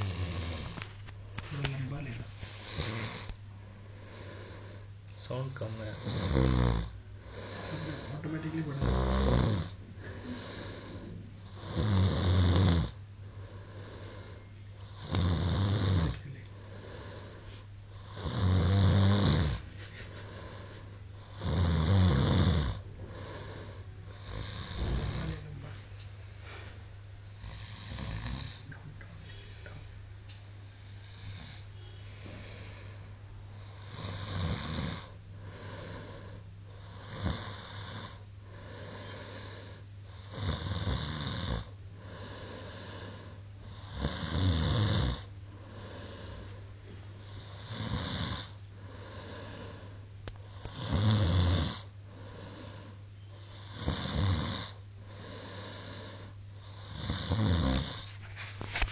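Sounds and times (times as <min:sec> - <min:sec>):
man snoring loudly: 0:00.0 - 0:00.8, 0:02.5 - 0:03.3, 0:05.7 - 0:13.0, 0:14.8 - 0:16.2, 0:18.0 - 0:19.6, 0:21.2 - 0:25.6, 0:27.4 - 0:28.7, 0:33.6 - 0:46.4, 0:47.3 - 0:49.8, 0:50.6 - 0:52.9, 0:53.5 - 0:58.1
steady low hum: 0:00.0 - 0:58.9.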